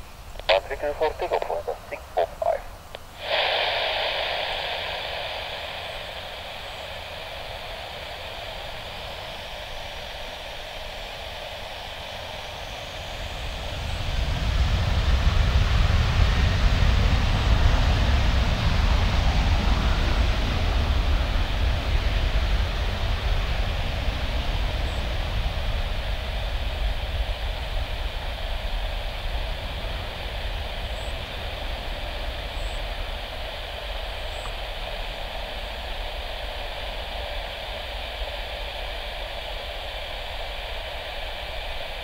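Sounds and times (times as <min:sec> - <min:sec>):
jet engine deep rumble: 0:00.0 - 0:42.0
jet engine whine: 0:00.0 - 0:42.0.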